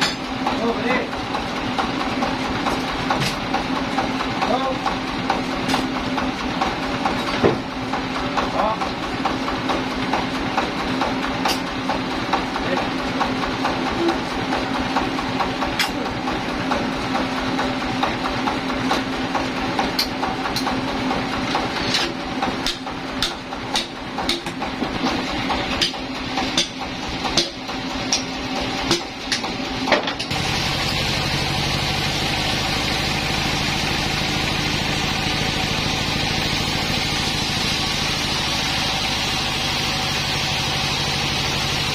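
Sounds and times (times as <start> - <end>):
sawmill engine running: 0.0 - 41.9
sharp knocks and clicks: 21.4 - 30.4.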